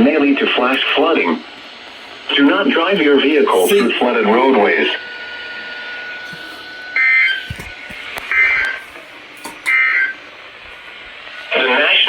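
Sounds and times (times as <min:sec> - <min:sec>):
data tone bursts: 0:02.4 - 0:07.5.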